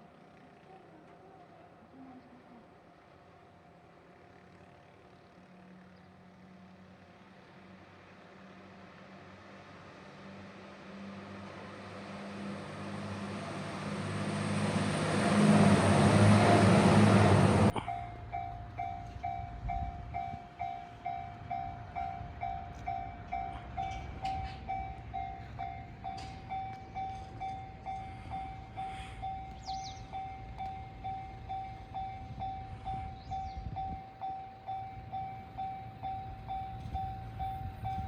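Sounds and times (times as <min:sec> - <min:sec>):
diesel train passing: 0:00.0 - 0:38.0
level crossing warning bell: 0:16.5 - 0:38.0.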